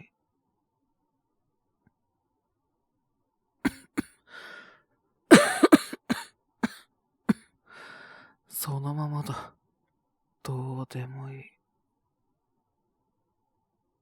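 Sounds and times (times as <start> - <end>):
man coughing: 3.7 - 4.1, 5.3 - 6.8
noisy breath in: 3.7 - 4.8, 7.7 - 8.4.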